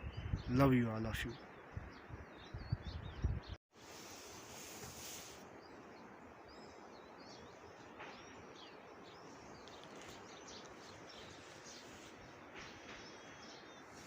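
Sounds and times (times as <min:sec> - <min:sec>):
small birds chirping: 0:00.0 - 0:14.0
outdoor background hiss: 0:03.7 - 0:14.0
high hiss: 0:03.8 - 0:05.7.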